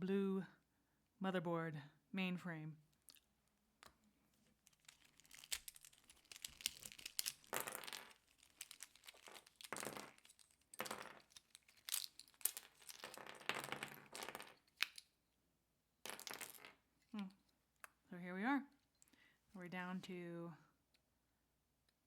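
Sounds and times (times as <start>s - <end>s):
plastic pieces clicking: 3.0s - 15.1s
plastic scraping rustles: 4.3s - 13.1s.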